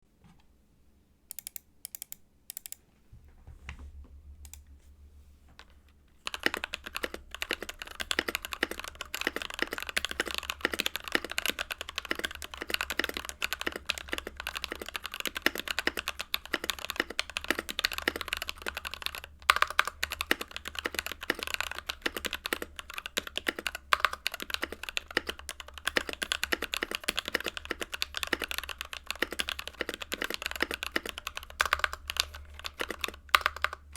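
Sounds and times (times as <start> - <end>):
mechanical keyboard typing: 1.3 - 2.8, 6.2 - 33.9.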